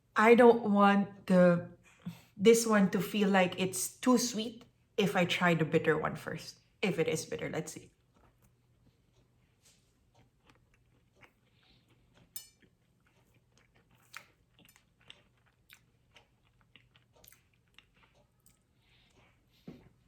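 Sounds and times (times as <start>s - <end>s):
person chewing food: 7.9s - 20.0s.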